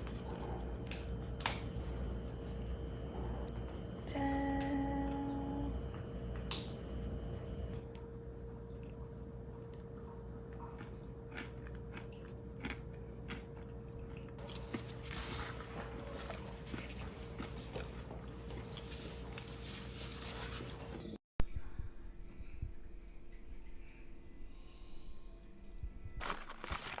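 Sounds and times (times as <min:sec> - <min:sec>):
chewing and crunching: 0:00.0 - 0:03.8, 0:08.8 - 0:20.9, 0:26.2 - 0:27.0
low steady hum: 0:00.0 - 0:27.0.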